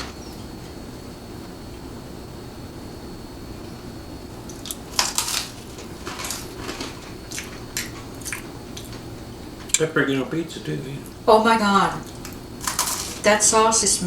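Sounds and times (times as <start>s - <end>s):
low room hum: 0.0s - 14.0s
pizza crust crunching: 4.4s - 9.9s, 12.0s - 13.4s.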